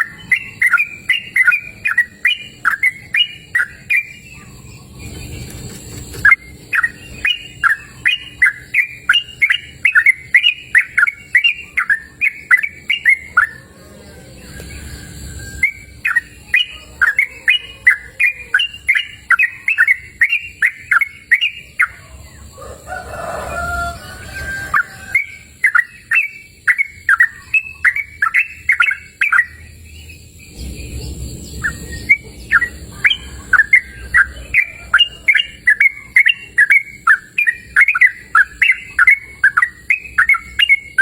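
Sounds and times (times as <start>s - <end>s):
bird whistling downward notes: 0.0s - 5.4s, 6.2s - 41.0s.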